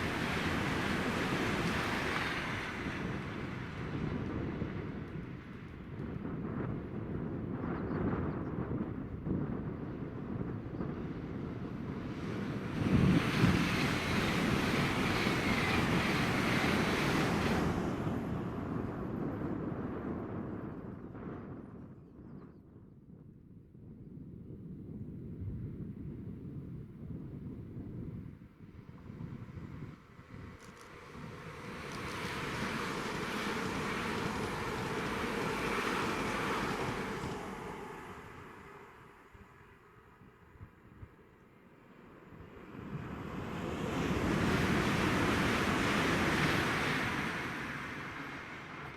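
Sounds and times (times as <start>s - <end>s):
train passing: 0.0s - 7.4s, 9.9s - 19.4s, 28.8s - 48.9s.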